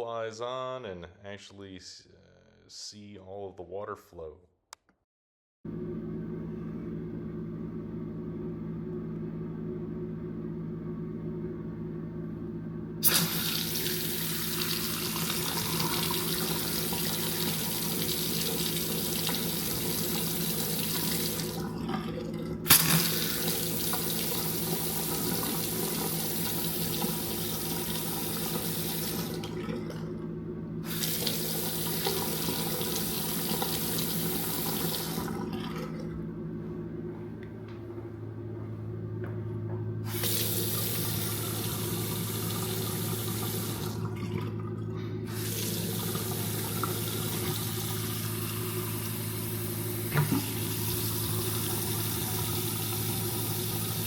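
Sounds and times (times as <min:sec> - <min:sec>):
faucet running into sink: 0:13.0 - 0:30.0, 0:30.8 - 0:36.0, 0:40.1 - 0:54.0.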